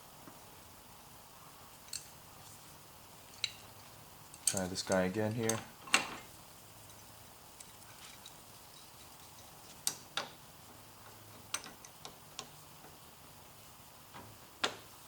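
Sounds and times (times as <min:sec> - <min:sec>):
wrench clicking on metal: 0:04.4 - 0:05.6.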